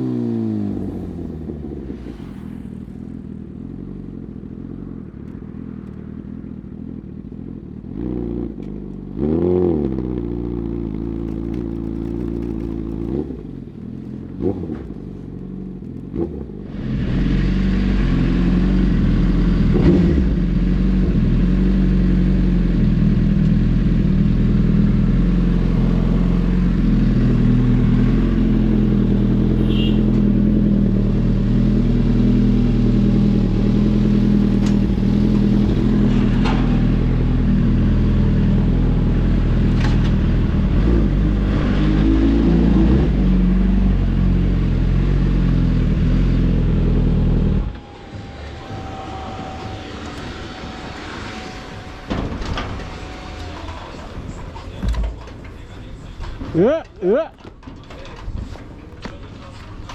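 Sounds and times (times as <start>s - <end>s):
motorcycle engine running: 0.0s - 41.3s
motorcycle engine throttle blips: 22.6s - 40.5s, 45.8s - 57.6s.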